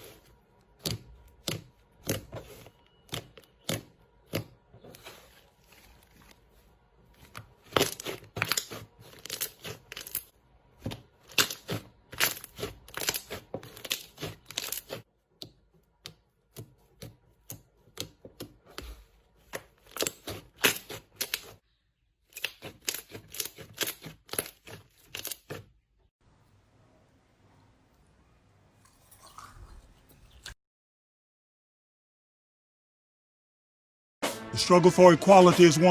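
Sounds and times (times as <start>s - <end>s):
slime popping and crackling: 11.3s - 15.0s.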